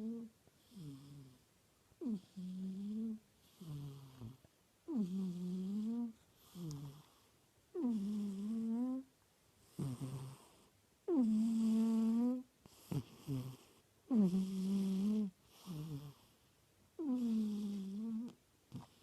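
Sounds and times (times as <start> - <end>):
cat snoring loudly: 0.0 - 1.4, 2.0 - 9.1, 9.7 - 16.3, 17.0 - 19.0.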